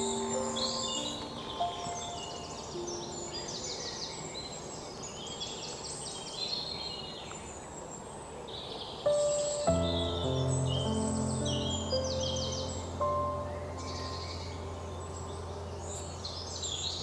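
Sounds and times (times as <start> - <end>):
slow soft instrumental music: 0.0 - 3.8, 9.1 - 16.9
small birds chirping: 0.0 - 17.0.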